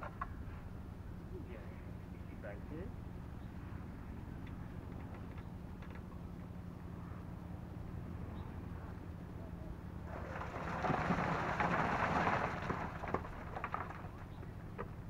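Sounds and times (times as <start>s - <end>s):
machine engine running: 9.8s - 15.0s
wet concrete pouring: 10.0s - 14.6s.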